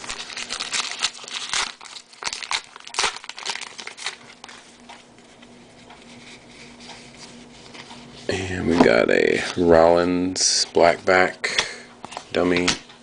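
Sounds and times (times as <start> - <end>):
foil wrapper crinkling and tearing: 0.0 - 4.7.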